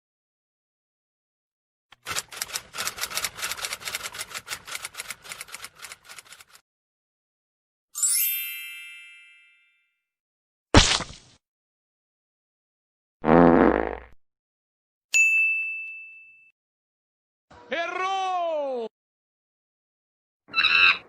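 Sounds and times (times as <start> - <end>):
typewriter key clacks: 2.0 - 6.6
typewriter bell ding: 15.2 - 16.5.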